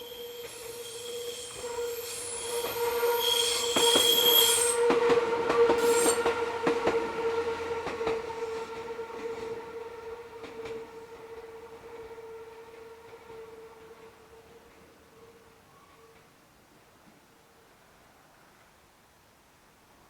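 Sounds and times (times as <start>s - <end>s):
train wheels squealing: 0.0s - 9.4s.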